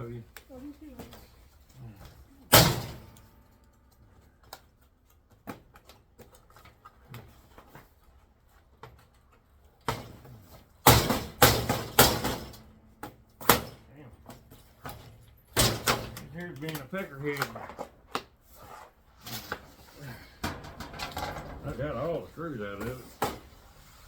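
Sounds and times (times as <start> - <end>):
clatter of tv parts handled: 20.4 - 21.9.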